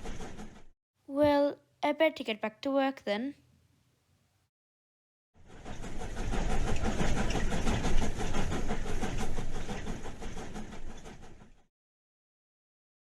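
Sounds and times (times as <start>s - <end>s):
train running: 5.4s - 11.7s.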